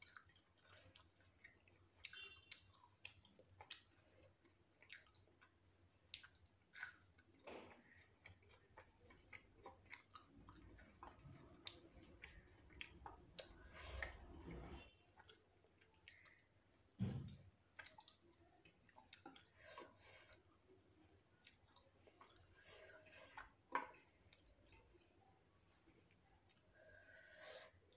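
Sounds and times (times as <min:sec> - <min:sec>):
person chewing food: 0:00.0 - 0:27.9
low thump: 0:17.0 - 0:17.4.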